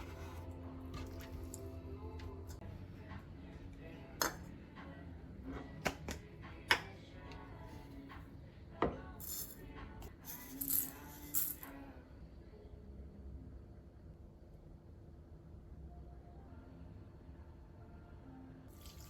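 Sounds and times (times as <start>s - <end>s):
rustling or scraping: 0.0s - 1.6s
quiet background music: 0.0s - 19.0s.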